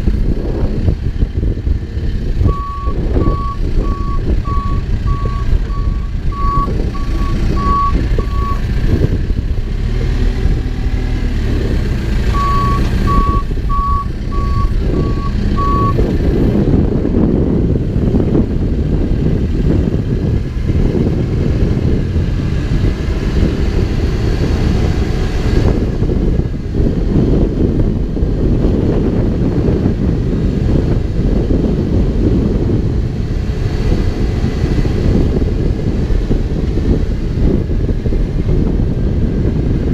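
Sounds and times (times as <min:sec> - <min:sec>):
diesel engine running under load: 0:00.0 - 0:39.9
reverse alarm beeping: 0:02.5 - 0:08.6, 0:12.3 - 0:16.0.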